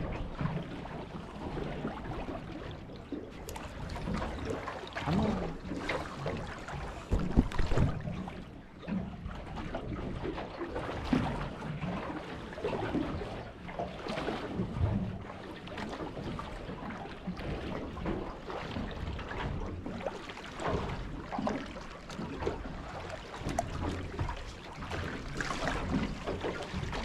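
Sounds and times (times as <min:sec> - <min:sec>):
water slapping against hull: 0:00.0 - 0:27.0
soft knocks: 0:06.9 - 0:08.1.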